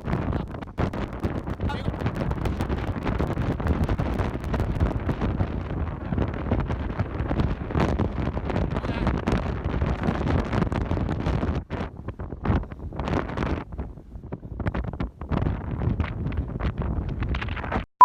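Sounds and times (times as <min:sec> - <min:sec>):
wind buffeting microphone: 0:00.0 - 0:17.8.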